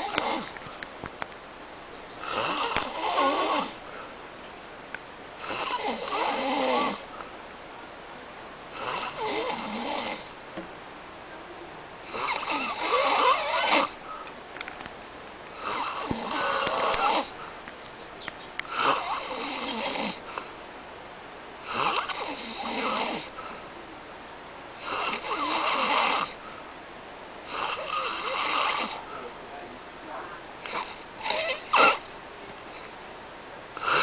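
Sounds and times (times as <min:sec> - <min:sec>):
man snoring heavily: 0:00.0 - 0:00.6, 0:02.2 - 0:03.8, 0:05.4 - 0:07.1, 0:08.7 - 0:10.4, 0:12.0 - 0:14.0, 0:15.5 - 0:17.4, 0:18.7 - 0:20.5, 0:21.6 - 0:23.6, 0:24.8 - 0:26.4, 0:27.4 - 0:29.3, 0:30.6 - 0:32.1, 0:33.8 - 0:34.0.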